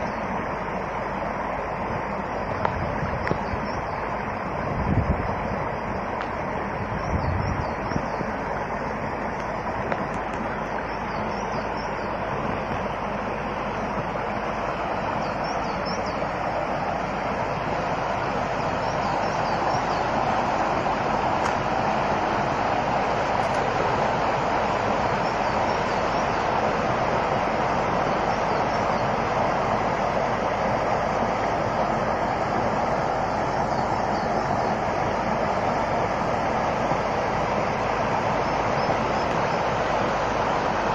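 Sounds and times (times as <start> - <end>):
steady rushing noise: 0.0 - 40.9
faint high bird chirps: 2.4 - 4.2, 6.8 - 8.4, 10.5 - 12.3, 15.0 - 16.7, 18.6 - 20.4.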